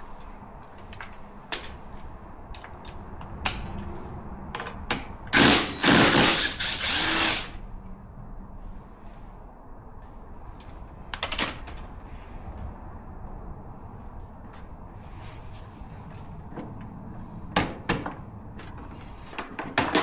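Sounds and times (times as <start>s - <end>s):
power drill bursts: 5.3s - 7.6s.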